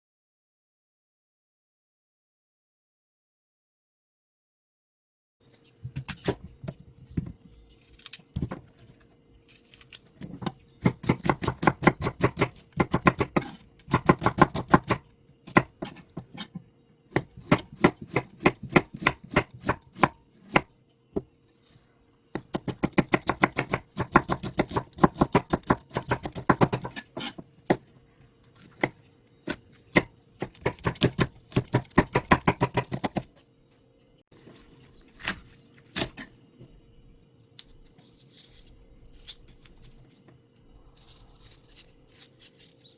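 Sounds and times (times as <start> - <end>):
knife chopping on cutting board: 10.8 - 16.5, 17.1 - 20.7, 22.4 - 27.4, 29.5 - 33.3.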